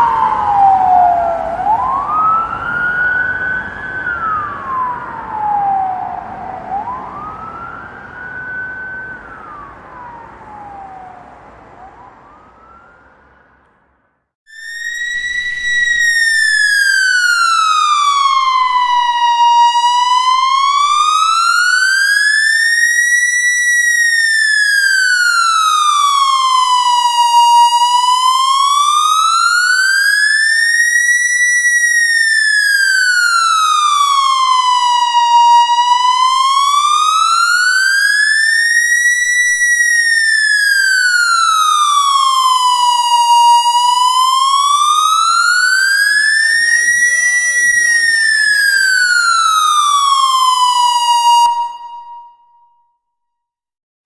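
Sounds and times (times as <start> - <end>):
police siren slow wail: 0.0 - 52.8.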